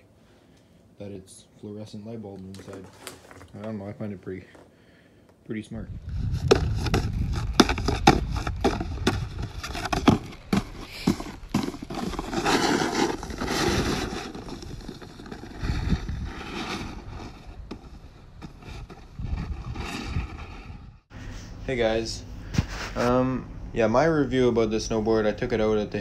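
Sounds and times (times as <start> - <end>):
snowboard scraping: 6.2 - 20.8
snowboard knocking: 6.4 - 15.3.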